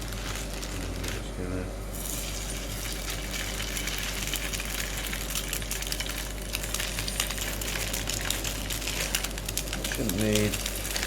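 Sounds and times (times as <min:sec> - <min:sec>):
low electrical hum: 0:00.0 - 0:11.0
hot oil sizzling in a frying pan: 0:01.9 - 0:11.0.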